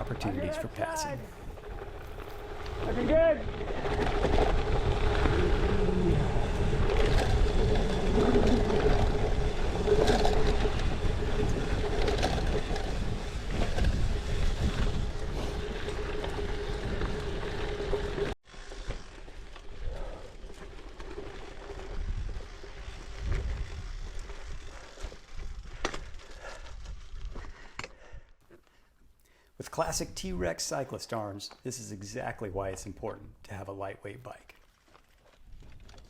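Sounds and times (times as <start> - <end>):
bike rattling over gravel: 0.0 - 27.8, 34.6 - 36.0
wind noise on microphone: 2.8 - 18.3, 21.8 - 28.2.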